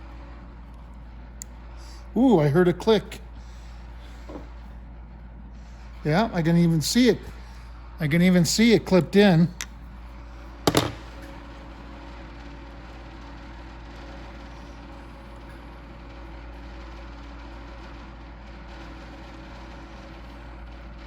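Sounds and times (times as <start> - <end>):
low background hum: 0.0 - 21.0
sharp knock: 10.7 - 11.2.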